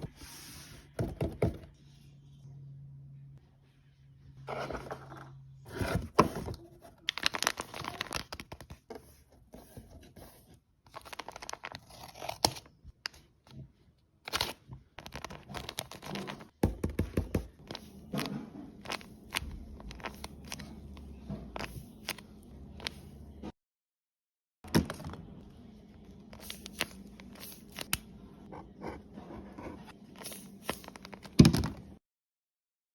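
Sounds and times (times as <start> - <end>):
paper crinkling and tearing: 6.8 - 8.8, 10.9 - 12.7.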